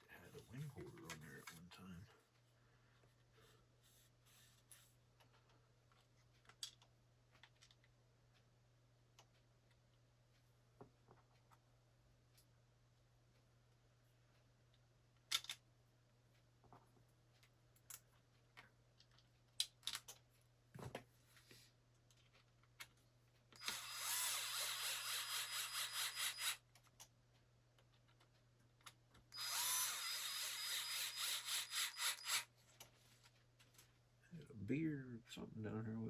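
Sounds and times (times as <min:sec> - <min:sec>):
parts clicking and knocking: 0:15.2 - 0:15.7
electric screwdriver whirring: 0:23.6 - 0:26.6, 0:29.4 - 0:32.5.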